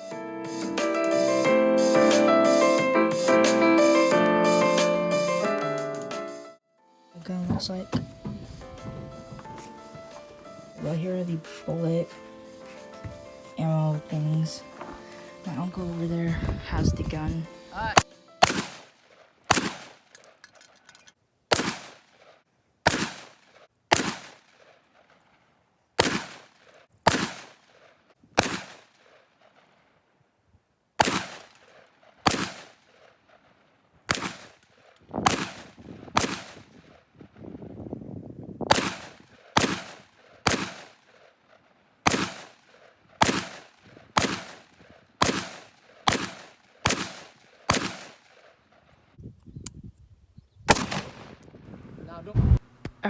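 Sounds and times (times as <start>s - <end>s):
gunshots with echo: 18.0s - 20.4s, 21.5s - 24.8s, 26.0s - 29.6s, 31.0s - 33.4s, 34.1s - 37.0s, 38.7s - 41.3s, 42.0s - 48.9s, 50.7s - 51.6s.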